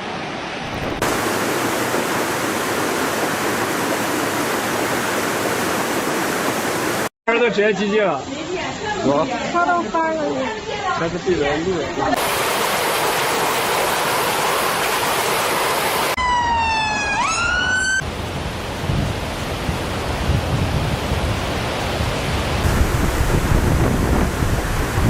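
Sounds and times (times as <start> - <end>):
floodwater rushing: 0.0 - 7.1, 12.1 - 16.2, 18.0 - 25.0
siren wail: 16.2 - 18.0
wind buffeting microphone: 18.4 - 25.0.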